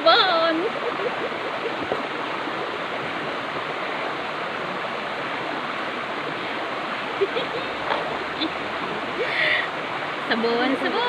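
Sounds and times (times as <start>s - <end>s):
stream rushing over rocks: 0.0s - 11.0s.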